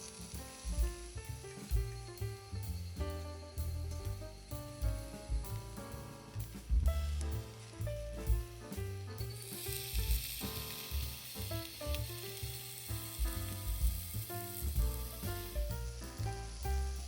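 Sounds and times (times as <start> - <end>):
food sizzling as it fries: 0.0 - 1.8, 9.2 - 17.0.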